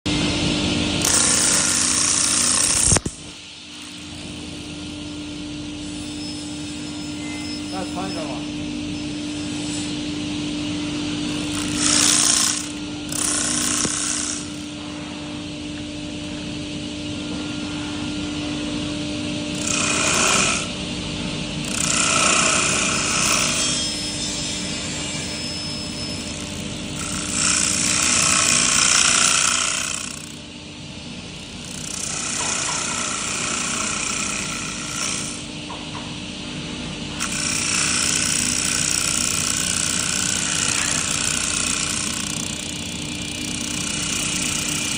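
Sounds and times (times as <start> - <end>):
wood lathe motor hum: 0.1 - 8.4, 11.0 - 14.7, 19.5 - 20.8, 21.6 - 30.5, 31.4 - 35.5, 37.1 - 44.9
cutter hissing into spinning wood: 1.0 - 3.2, 11.3 - 14.7, 19.5 - 20.7, 21.6 - 30.4, 31.5 - 35.5, 37.2 - 44.9.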